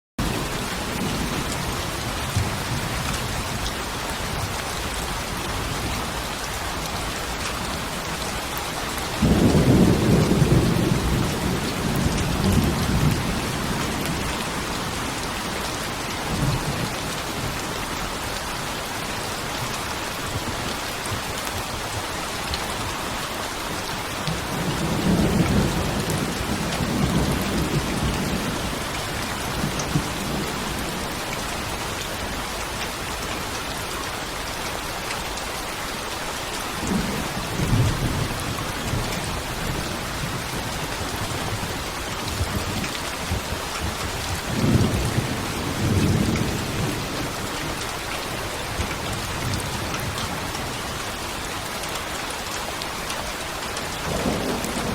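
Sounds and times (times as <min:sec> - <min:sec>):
rain hissing on a surface: 0:00.2 - 0:54.9
thunder rumbling: 0:09.2 - 0:14.8, 0:54.1 - 0:54.9.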